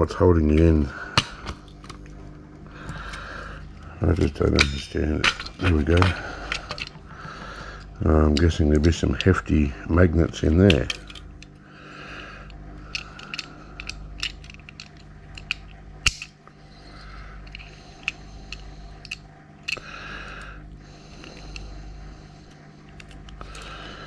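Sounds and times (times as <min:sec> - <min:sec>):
small metal clicks and taps: 0:12.9 - 0:16.4.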